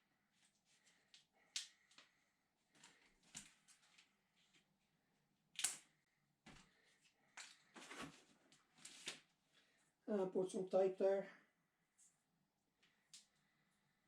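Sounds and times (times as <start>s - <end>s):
clicks and rustles of wiring: 0.4s - 4.7s, 5.5s - 9.6s.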